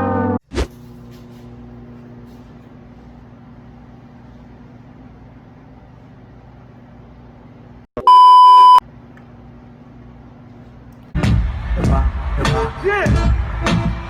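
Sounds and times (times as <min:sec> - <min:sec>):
microwave oven humming: 0:00.0 - 0:12.0
electronic beep: 0:08.0 - 0:08.8.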